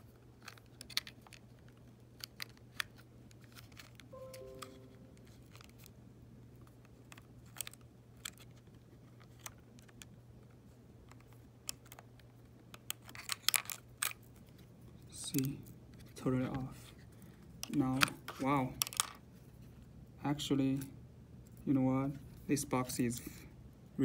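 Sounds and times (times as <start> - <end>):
faint steady low hum: 0.0 - 24.0
plastic and metal parts handled: 0.3 - 4.1, 11.1 - 14.7, 17.6 - 19.2.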